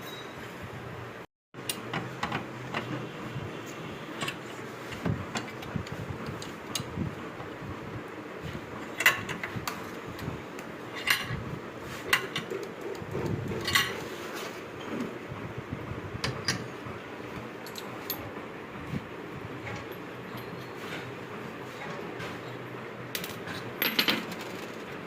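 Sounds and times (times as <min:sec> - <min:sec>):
steady background hum: 0:00.0 - 0:25.0
metal tools clinking and tapping: 0:10.9 - 0:11.4, 0:13.5 - 0:14.1, 0:17.6 - 0:18.3, 0:19.6 - 0:21.1.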